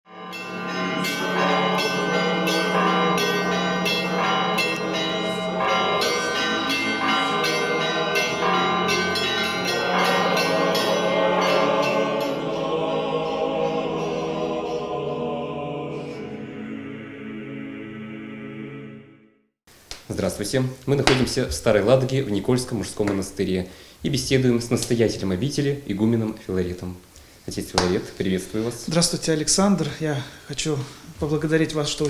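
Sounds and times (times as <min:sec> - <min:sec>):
church bells pealing: 0:00.1 - 0:15.0.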